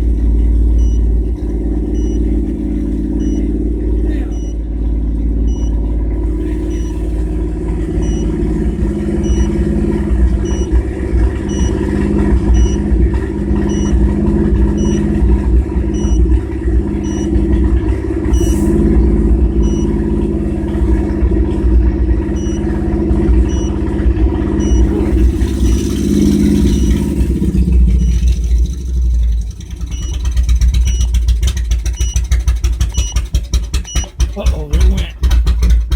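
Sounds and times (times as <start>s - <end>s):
engine running with misfire: 0.0s - 35.9s
fast clatter: 24.7s - 35.9s.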